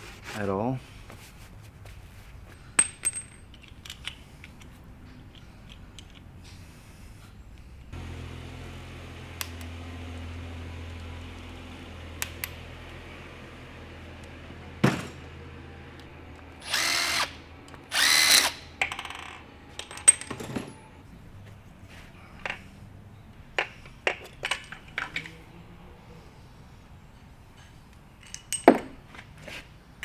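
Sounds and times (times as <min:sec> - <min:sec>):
metal clicks: 0:03.0 - 0:06.3
power tool bursts: 0:16.4 - 0:19.5.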